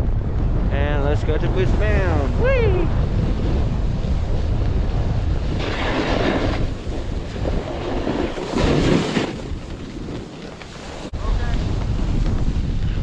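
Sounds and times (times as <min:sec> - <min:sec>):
low rumble: 0:00.0 - 0:08.3
wind buffeting microphone: 0:00.0 - 0:13.0
snowboard sliding over snow: 0:01.8 - 0:13.0.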